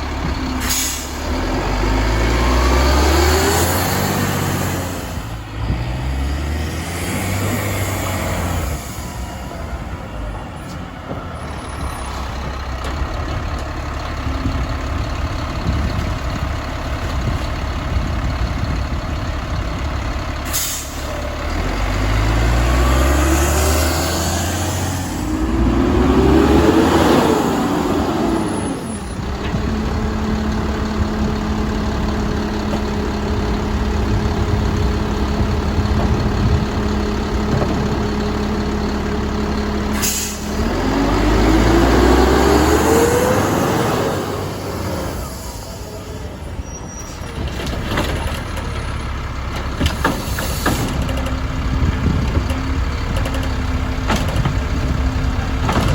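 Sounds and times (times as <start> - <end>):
garbage truck diesel engine revving: 0.0 - 55.9
air brake hiss: 0.6 - 1.2, 20.5 - 21.2, 39.9 - 40.6, 50.1 - 50.9.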